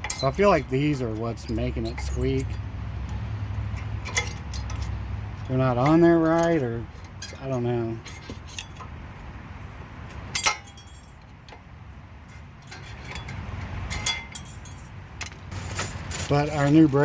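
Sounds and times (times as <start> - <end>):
light metallic clinks: 0.0 - 3.2.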